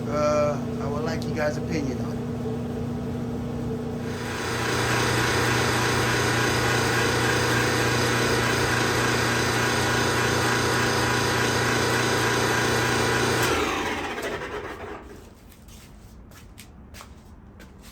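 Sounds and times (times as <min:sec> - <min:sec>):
dryer winding down: 0:00.0 - 0:15.3
clothes dryer running: 0:00.0 - 0:15.5.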